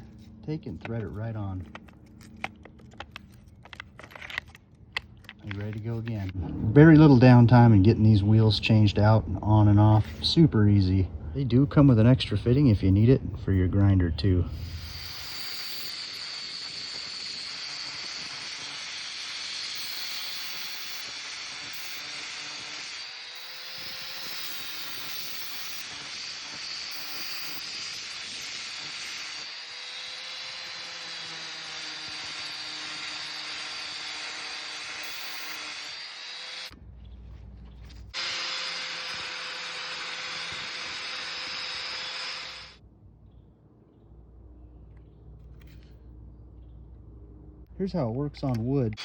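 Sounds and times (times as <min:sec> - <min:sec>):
angle grinder grinding: 0:12.4 - 0:36.8, 0:37.6 - 0:42.8
quiet low hum: 0:42.8 - 0:49.0.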